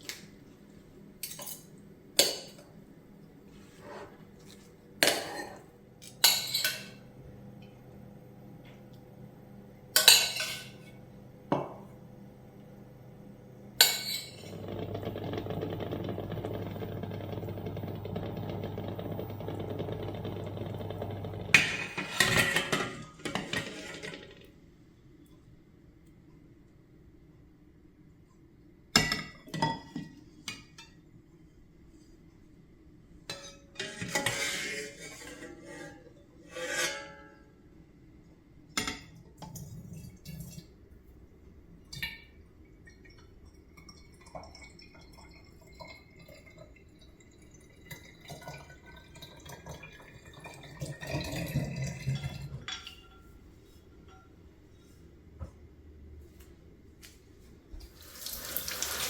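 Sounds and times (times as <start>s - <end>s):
glassware clinking: 5.1s - 7.0s, 10.0s - 10.8s, 13.8s - 14.7s, 52.0s - 53.4s
liquid being poured: 42.9s - 52.7s, 58.0s - 59.0s.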